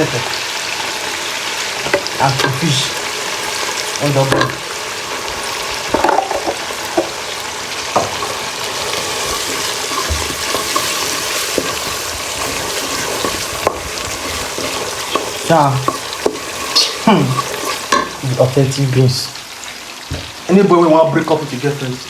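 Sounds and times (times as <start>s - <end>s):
paste sizzling in hot oil: 0.0s - 22.0s
spoon knocking on pot: 5.9s - 7.2s, 8.0s - 8.3s, 9.9s - 16.5s, 17.4s - 18.2s.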